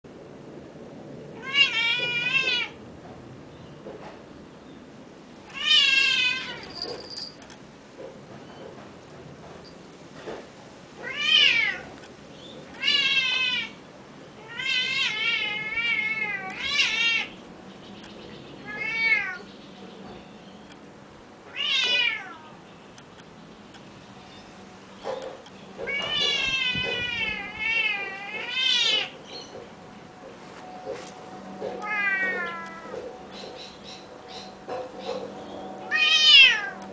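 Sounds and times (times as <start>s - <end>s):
cat meowing: 1.4s - 2.8s, 5.5s - 7.0s, 11.0s - 11.9s, 12.8s - 13.8s, 14.4s - 17.4s, 18.6s - 19.5s, 21.5s - 22.6s, 25.8s - 29.2s, 31.8s - 33.0s, 35.9s - 36.8s.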